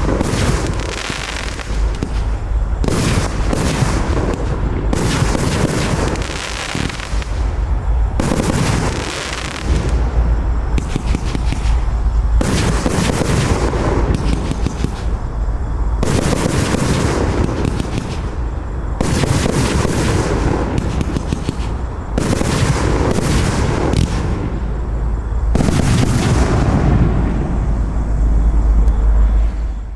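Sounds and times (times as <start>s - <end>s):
fireworks launch thumps: 0.0s - 7.6s, 8.2s - 24.5s
fireworks bursting booms with crackle: 0.0s - 29.9s.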